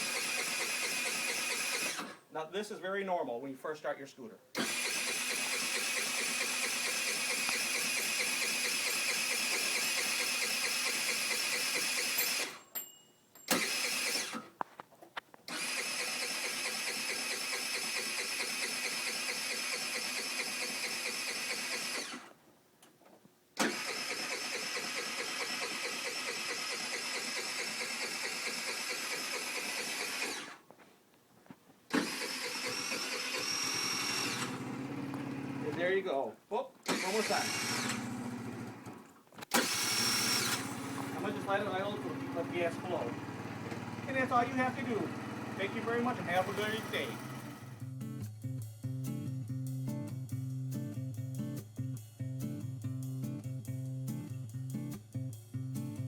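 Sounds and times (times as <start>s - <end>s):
scooter engine cranking: 0.0s - 2.3s, 4.6s - 12.8s, 13.5s - 14.6s, 15.5s - 22.3s, 23.6s - 30.6s, 31.9s - 35.9s, 36.8s - 47.8s.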